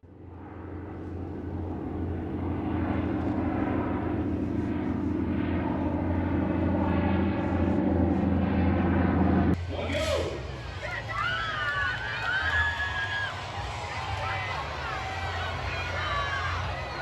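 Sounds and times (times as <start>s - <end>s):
engine droning: 0.0s - 11.1s.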